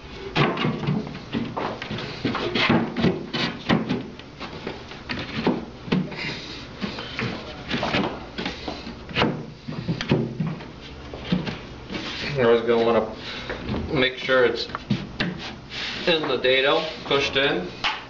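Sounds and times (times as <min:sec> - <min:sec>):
wooden panels knocking and rubbing: 0:00.3 - 0:06.2.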